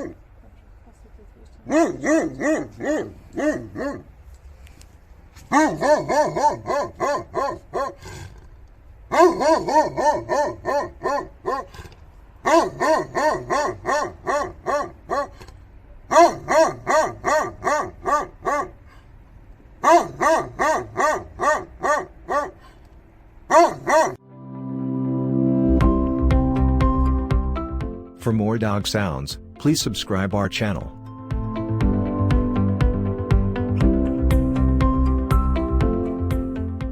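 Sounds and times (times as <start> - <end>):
dog barking: 0.0 - 0.2, 1.7 - 4.1, 5.5 - 8.0, 9.1 - 11.7, 12.4 - 15.4, 16.1 - 18.8, 19.8 - 22.6, 23.5 - 24.2.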